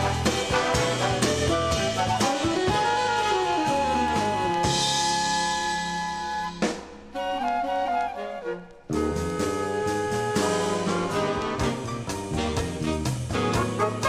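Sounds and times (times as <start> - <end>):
sharp drum hit: 0.0 - 2.2
big band jazz from vinyl: 0.0 - 14.0.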